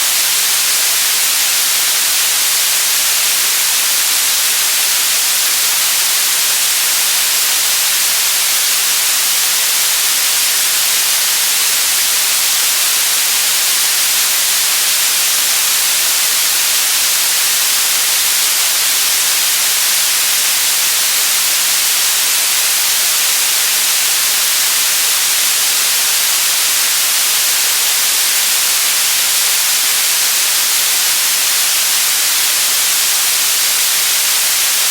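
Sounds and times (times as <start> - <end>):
loud static hiss: 0.0 - 34.9.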